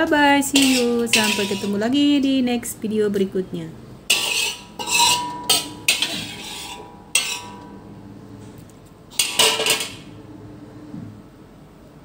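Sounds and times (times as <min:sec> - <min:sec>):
utensil clatter: 0:00.4 - 0:01.9, 0:04.1 - 0:07.7, 0:09.1 - 0:10.1
utensil clinking against dishes: 0:00.5 - 0:01.8, 0:04.1 - 0:07.7, 0:09.2 - 0:10.1.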